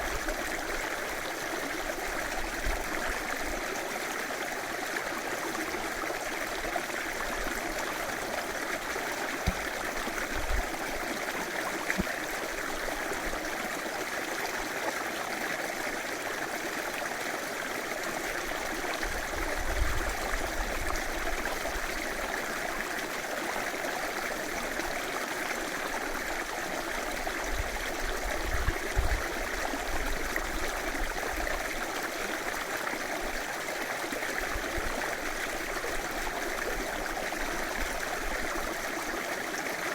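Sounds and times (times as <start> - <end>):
river flowing: 0.0 - 19.2.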